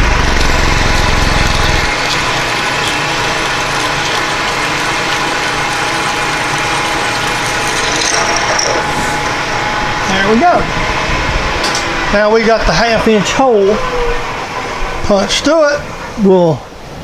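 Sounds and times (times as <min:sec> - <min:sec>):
drill boring through metal: 0:00.0 - 0:11.1.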